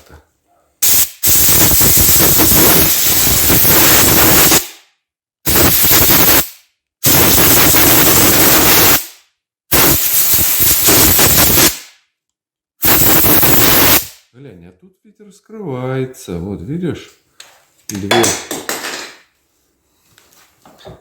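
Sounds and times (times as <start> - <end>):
compressed air bursts: 0.8 - 4.8, 5.5 - 12.0, 12.8 - 14.3.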